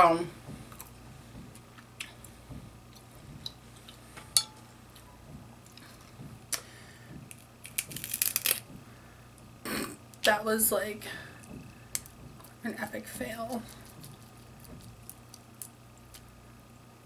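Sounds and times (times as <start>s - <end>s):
crab shells cracking: 7.3s - 8.7s, 11.9s - 12.6s, 13.5s - 16.4s.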